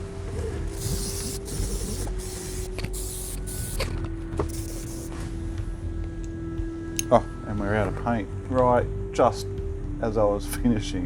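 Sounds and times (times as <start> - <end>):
airbrush spraying hiss: 0.7 - 5.6.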